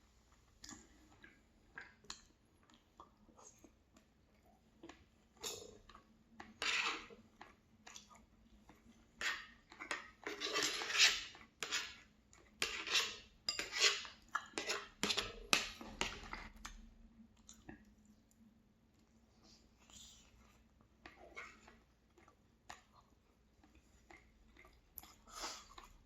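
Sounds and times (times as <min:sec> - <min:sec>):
cutlery scraping on a plate: 0:06.6 - 0:07.1, 0:09.2 - 0:12.0, 0:12.6 - 0:16.5.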